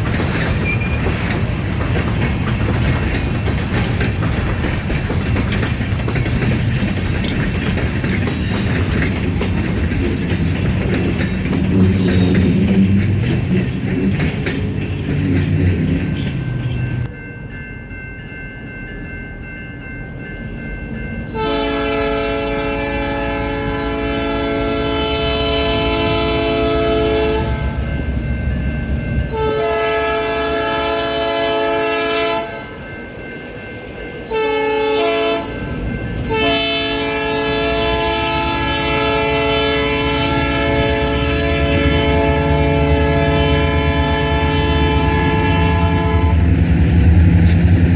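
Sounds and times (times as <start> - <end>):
train rumble: 0.0 - 47.9
locomotive horn blasts: 21.3 - 27.8, 29.3 - 32.7, 34.2 - 35.5, 36.2 - 46.6.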